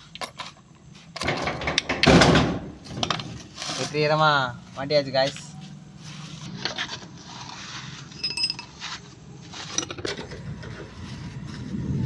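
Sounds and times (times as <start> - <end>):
metal tools clinking and scraping: 2.8 - 11.2
ringing metal clink: 8.2 - 8.7.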